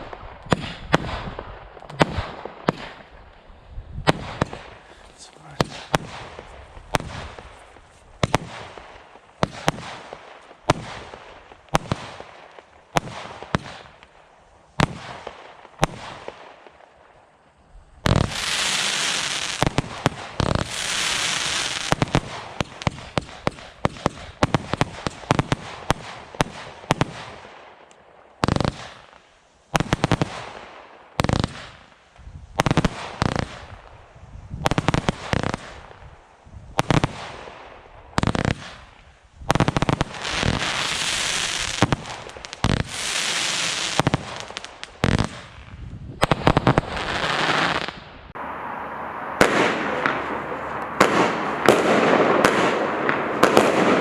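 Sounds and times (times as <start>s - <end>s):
firework shots banging: 0.5s - 3.1s, 4.0s - 7.5s, 41.4s - 48.1s, 49.4s - 54.0s
rapid-fire firework volleys: 4.1s - 12.2s, 18.1s - 27.4s, 38.2s - 48.2s, 49.4s - 54.0s.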